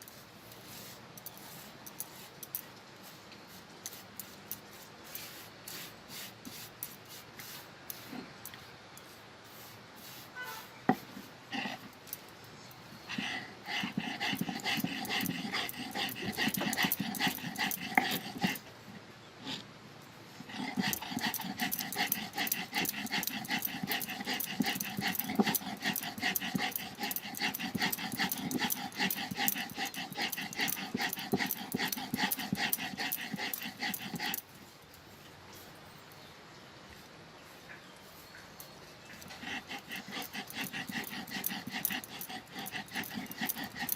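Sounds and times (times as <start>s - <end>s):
stone roller grinding on stone: 13.8s - 18.6s, 20.5s - 34.5s, 39.3s - 43.9s.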